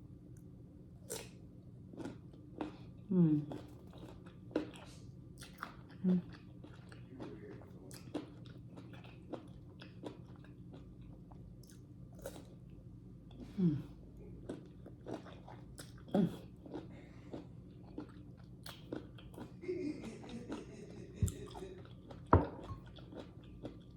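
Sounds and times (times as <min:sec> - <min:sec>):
wet chewing and smacking: 0:03.5 - 0:12.7, 0:14.2 - 0:19.6, 0:20.2 - 0:23.9.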